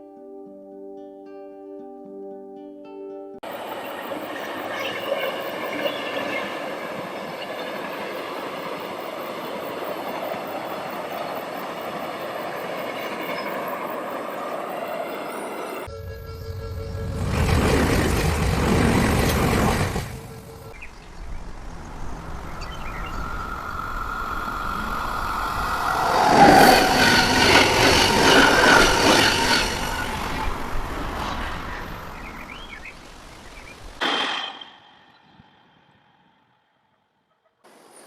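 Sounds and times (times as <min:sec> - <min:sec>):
train passing: 0:03.4 - 0:34.0
steady high tone: 0:14.7 - 0:18.3, 0:21.9 - 0:32.2
loud rumble: 0:16.6 - 0:32.4.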